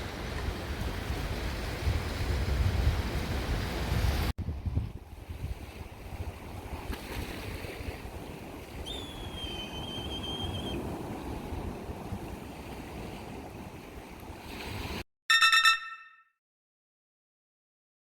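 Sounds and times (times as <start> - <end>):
wind buffeting microphone: 0.2 - 14.4
high whistle-like tone: 8.9 - 10.8, 15.3 - 16.3.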